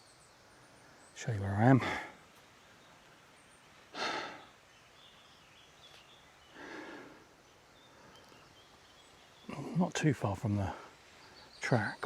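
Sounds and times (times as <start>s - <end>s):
breathy exhales: 4.0s - 4.4s.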